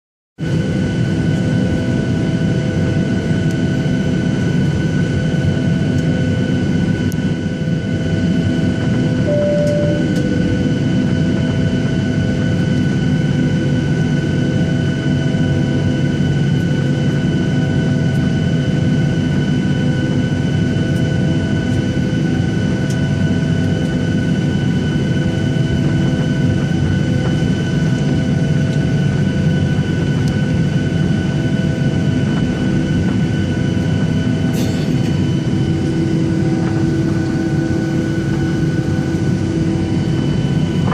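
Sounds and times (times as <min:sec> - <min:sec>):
jet engine cabin rumble: 0:00.4 - 0:40.9
short beep: 0:09.2 - 0:10.8
high steady whine: 0:09.2 - 0:13.0, 0:24.4 - 0:40.9.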